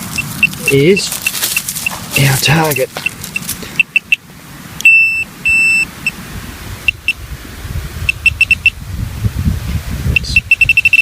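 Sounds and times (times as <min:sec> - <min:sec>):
metal detector probe beeping: 0:00.0 - 0:04.2, 0:04.8 - 0:06.2, 0:06.9 - 0:07.2, 0:08.0 - 0:08.8, 0:10.2 - 0:11.0.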